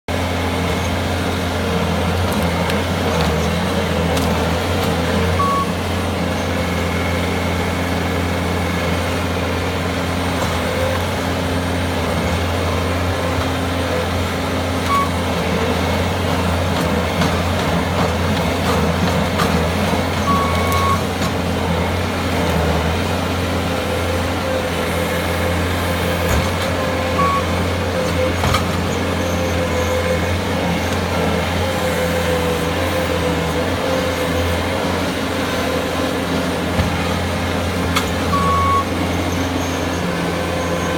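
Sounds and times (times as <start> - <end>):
diesel engine running under load: 0.1 - 40.9
short high beeps: 5.4 - 5.8, 14.9 - 15.2, 20.2 - 21.1, 27.2 - 27.6, 38.3 - 38.9.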